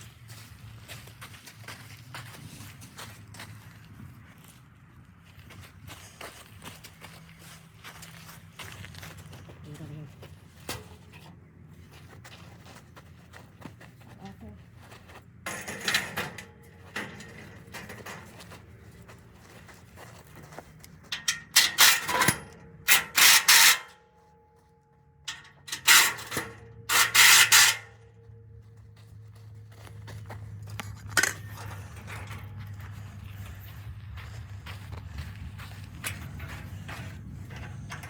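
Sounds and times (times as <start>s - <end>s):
scraping and rubbing: 25.8s - 28.0s.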